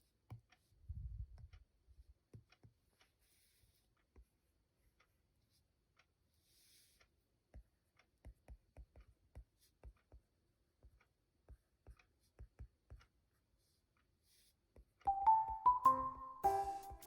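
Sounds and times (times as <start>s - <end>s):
stylus tapping on a screen: 15.1s - 17.0s.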